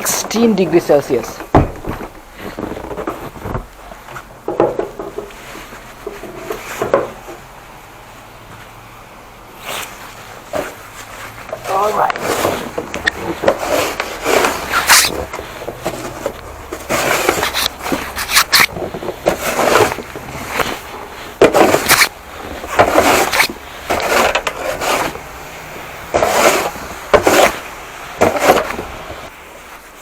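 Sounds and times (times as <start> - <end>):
snow shovel scraping: 9.6 - 30.0.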